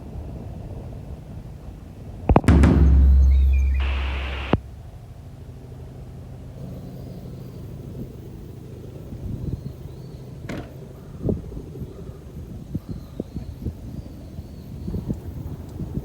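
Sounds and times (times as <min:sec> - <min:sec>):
sharp tick: 0:02.3 - 0:04.6
loud sound cutting off: 0:02.3 - 0:04.7
low outdoor rumble: 0:02.3 - 0:05.5.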